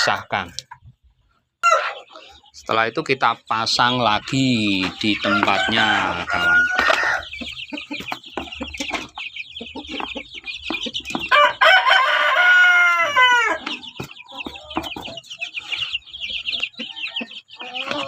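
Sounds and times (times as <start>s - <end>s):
chickens calling: 0.0s - 18.0s
rooster crowing: 1.6s - 2.0s, 5.2s - 7.3s, 11.3s - 13.6s
scattered knocks: 6.8s - 9.2s, 9.8s - 11.4s.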